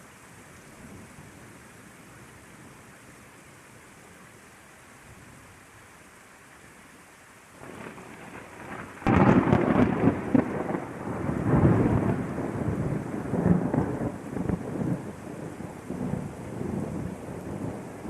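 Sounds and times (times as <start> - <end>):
steady rain hiss: 0.0 - 18.0
thunder crack and rumble: 7.6 - 18.0.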